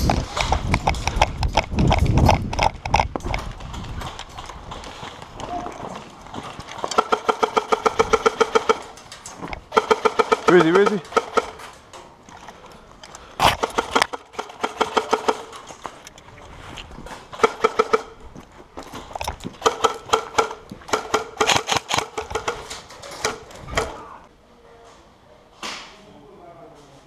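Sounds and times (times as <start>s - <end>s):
airsoft guns firing bursts: 6.8s - 9.0s, 9.7s - 11.8s, 13.4s - 15.7s, 17.3s - 18.2s, 19.5s - 24.0s.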